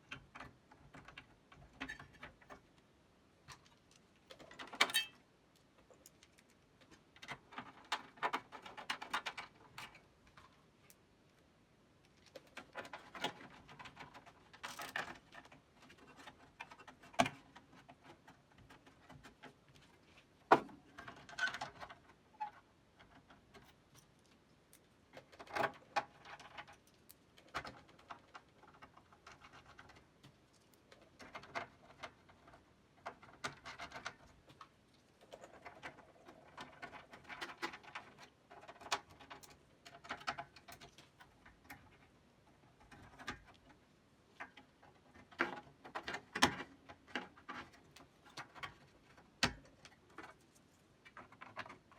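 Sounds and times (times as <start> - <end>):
tools and metal parts clicking: 4.8 - 5.2.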